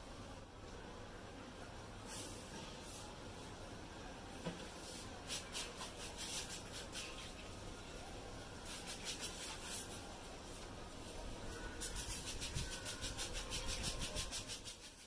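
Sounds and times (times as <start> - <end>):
scratchy head massage rubbing: 4.8 - 7.4, 8.6 - 10.6, 11.5 - 15.0.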